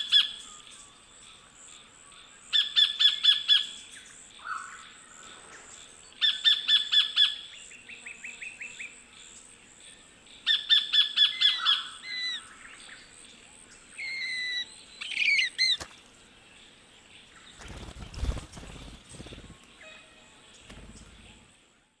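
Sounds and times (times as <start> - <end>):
kingfisher calling: 14.0 - 15.9.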